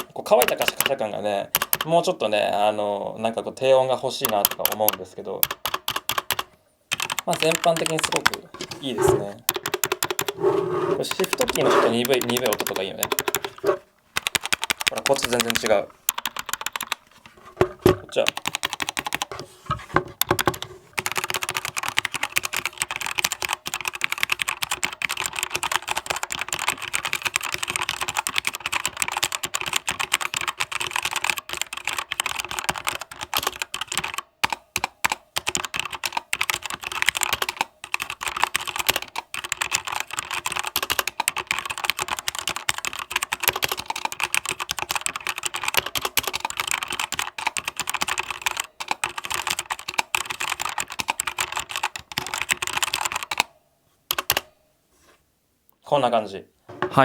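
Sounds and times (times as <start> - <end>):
mechanical keyboard typing: 0.0 - 2.0, 4.1 - 17.0, 17.6 - 19.4, 20.2 - 53.5, 54.1 - 54.5.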